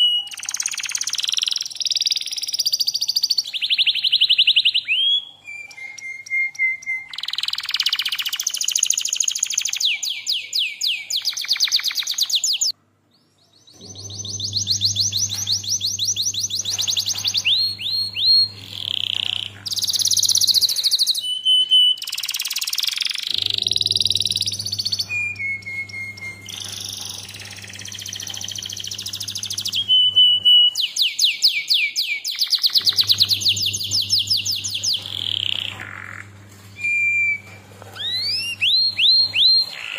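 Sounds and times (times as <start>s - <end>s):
canary singing trills: 0.0s - 39.9s
steady low hum: 13.7s - 20.8s, 23.3s - 30.7s, 32.8s - 39.8s.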